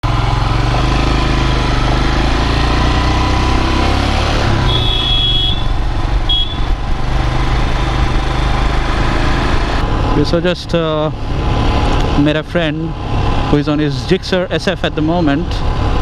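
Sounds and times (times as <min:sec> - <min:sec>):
motorcycle engine running: 0:00.0 - 0:16.0
horn beeps: 0:04.5 - 0:06.8.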